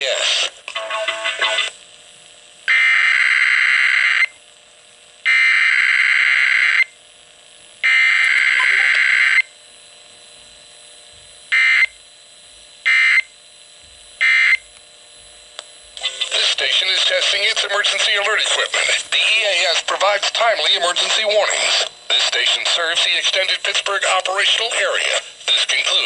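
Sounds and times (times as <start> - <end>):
buzzy digital data tones: 2.7 - 4.4, 7.8 - 9.6.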